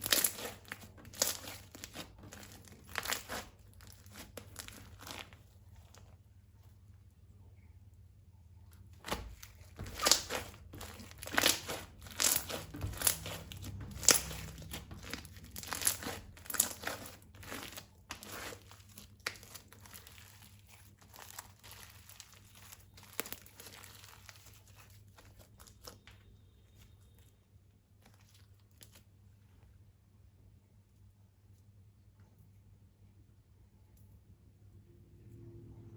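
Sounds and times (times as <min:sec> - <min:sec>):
slime crinkling and crackling: 0:00.0 - 0:06.8, 0:08.7 - 0:27.3, 0:27.9 - 0:29.2.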